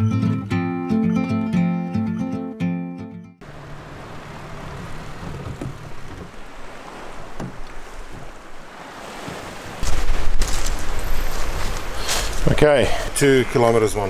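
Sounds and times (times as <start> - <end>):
sea: 3.4 - 14.0
wind buffeting microphone: 4.0 - 12.7.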